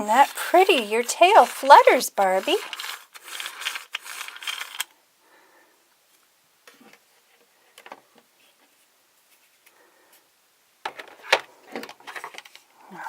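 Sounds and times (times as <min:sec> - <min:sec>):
plastic toy parts clicking: 0:00.2 - 0:04.9.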